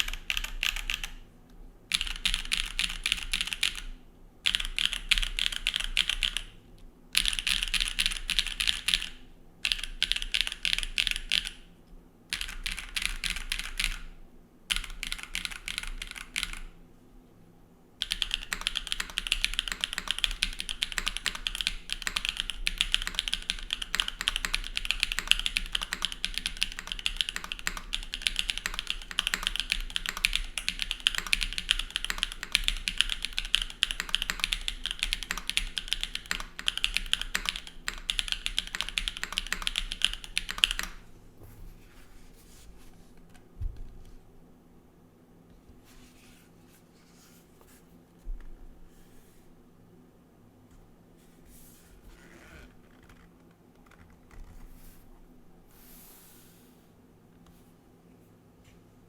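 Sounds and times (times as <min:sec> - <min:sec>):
typing on mechanical keyboard: 0:00.0 - 0:01.2, 0:01.9 - 0:06.5, 0:07.2 - 0:11.7, 0:12.3 - 0:14.1, 0:14.7 - 0:16.7, 0:18.0 - 0:41.0.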